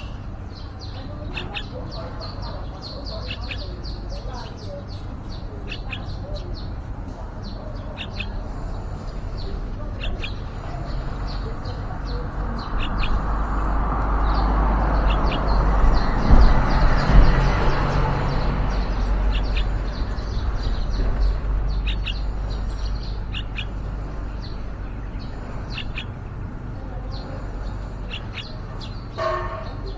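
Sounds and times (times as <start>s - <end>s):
birds chirping: 0.0s - 29.9s
rushing noise with low rumble: 8.2s - 29.2s.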